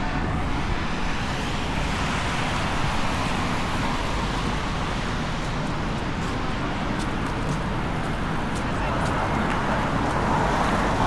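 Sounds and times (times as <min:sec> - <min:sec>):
street traffic hiss: 0:00.0 - 0:11.0.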